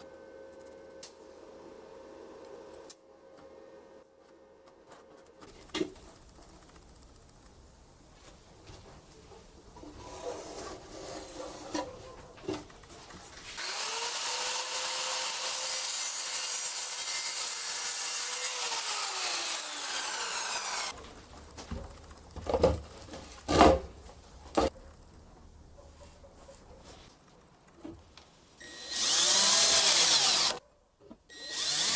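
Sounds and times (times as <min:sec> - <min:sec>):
angle grinder whining: 0:13.6 - 0:21.0, 0:28.6 - 0:30.6, 0:31.3 - 0:31.9.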